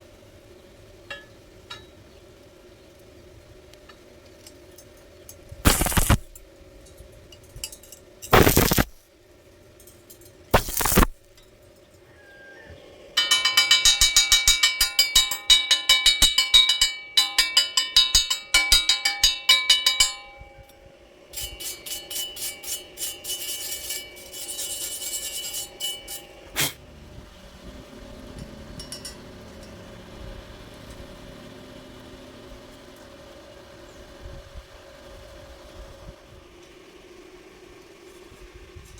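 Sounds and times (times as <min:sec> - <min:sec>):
steady low hum: 0:00.0 - 0:15.6, 0:18.2 - 0:38.9
short noisy bursts: 0:05.6 - 0:06.3, 0:08.3 - 0:09.0, 0:10.5 - 0:11.2.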